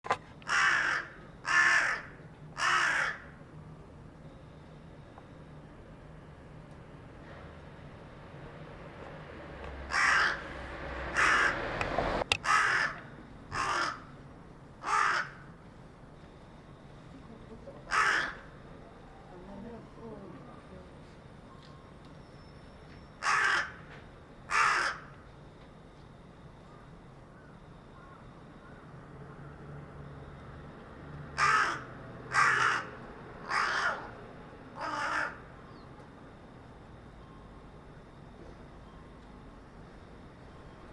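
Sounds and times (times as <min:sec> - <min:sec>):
crow cawing: 0:00.4 - 0:03.4, 0:09.9 - 0:10.5, 0:11.1 - 0:11.7, 0:12.4 - 0:14.2, 0:14.8 - 0:15.6, 0:17.9 - 0:18.6, 0:23.2 - 0:23.9, 0:24.5 - 0:25.2, 0:27.4 - 0:28.9, 0:31.4 - 0:34.2, 0:34.8 - 0:35.5.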